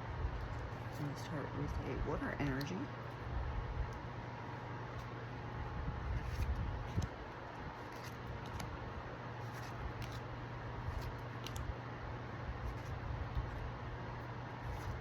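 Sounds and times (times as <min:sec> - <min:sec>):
steady low hum: 0:00.0 - 0:15.0
cards clicking and rustling: 0:06.1 - 0:08.8, 0:09.4 - 0:11.8, 0:12.6 - 0:13.6, 0:14.5 - 0:15.0.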